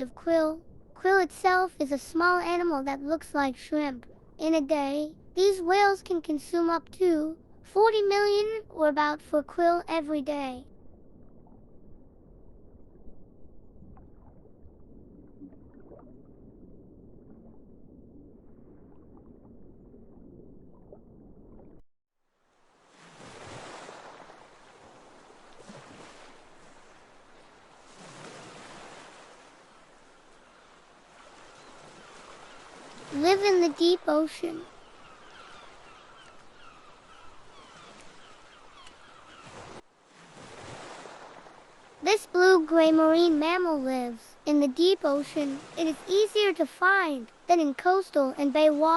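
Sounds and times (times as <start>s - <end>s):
low muffled water rumble: 0.0s - 8.0s, 10.6s - 21.8s
water splashes and gurgles: 0.0s - 21.8s, 22.4s - 48.9s.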